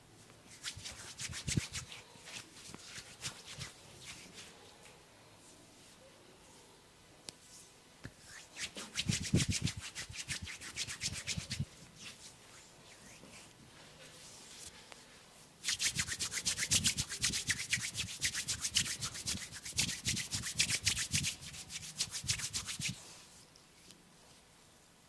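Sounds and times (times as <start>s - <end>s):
scratching strokes on hair: 0.5s - 6.7s, 7.4s - 24.7s
faint rubbing: 7.4s - 23.5s.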